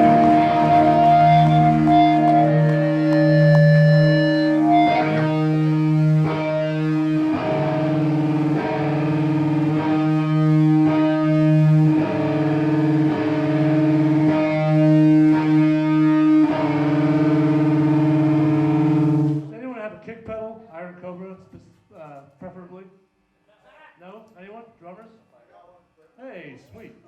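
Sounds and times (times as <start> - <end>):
distorted electric guitar: 0.0 - 19.5.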